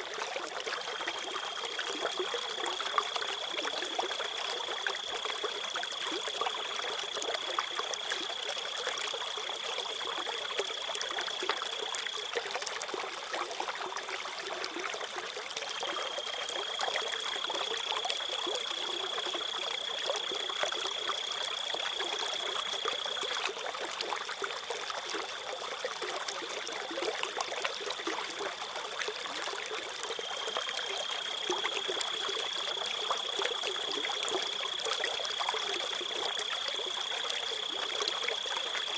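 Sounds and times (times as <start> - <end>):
stream water trickling: 0.0 - 38.9
crickets chirping: 15.7 - 23.3, 29.6 - 38.9.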